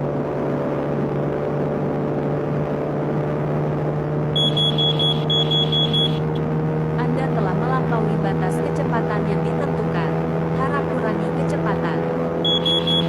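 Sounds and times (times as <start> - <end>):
vehicle engine drone: 0.0 - 13.0
short high electronic beeps: 4.4 - 6.4, 12.5 - 13.0.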